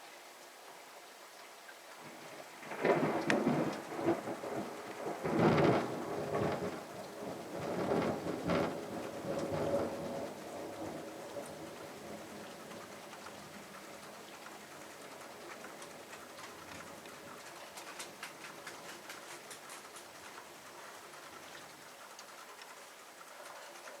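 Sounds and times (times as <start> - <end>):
raindrops pattering: 0.0 - 24.0
thunder rumble: 2.6 - 12.3.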